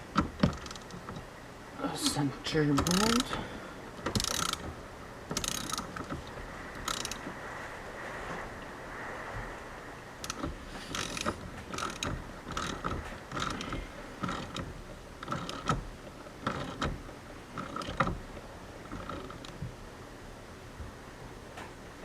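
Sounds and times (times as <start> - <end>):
hand ratchet clicking: 2.8 - 3.4, 4.0 - 4.6, 5.4 - 6.0, 6.8 - 7.2, 10.2 - 15.8, 16.4 - 17.0.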